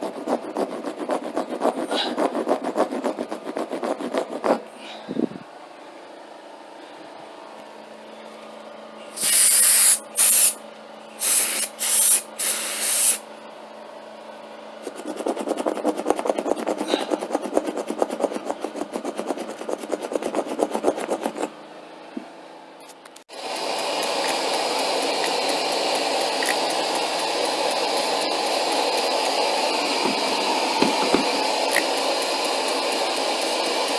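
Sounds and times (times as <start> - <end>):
brush scrubbing carpet: 0.0 - 4.6, 14.8 - 21.5, 23.4 - 33.9
spray bottle hissing: 9.2 - 10.6, 11.2 - 13.2, 23.4 - 33.9.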